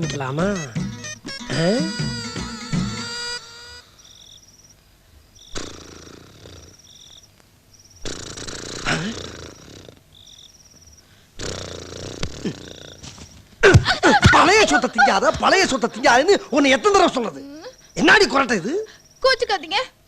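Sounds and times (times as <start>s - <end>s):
person snoring: 5.6s - 6.8s, 8.0s - 10.0s, 11.4s - 13.0s
quiet breaths: 10.8s - 14.1s, 17.5s - 18.0s, 18.7s - 19.3s.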